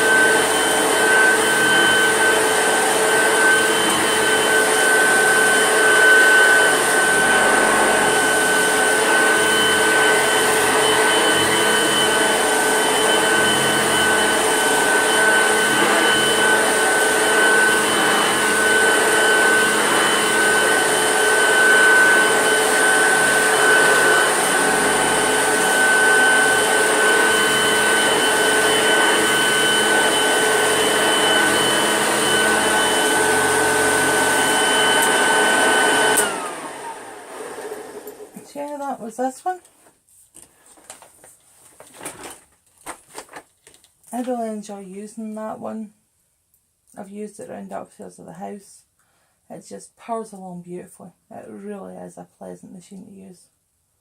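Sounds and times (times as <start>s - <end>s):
vacuum cleaner motor whine: 0.0s - 39.0s.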